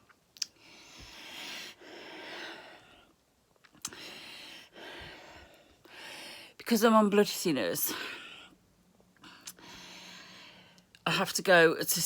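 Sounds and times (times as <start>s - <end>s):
woman breathing heavily: 0.5s - 3.2s, 3.8s - 6.6s, 7.9s - 8.6s, 9.2s - 10.9s.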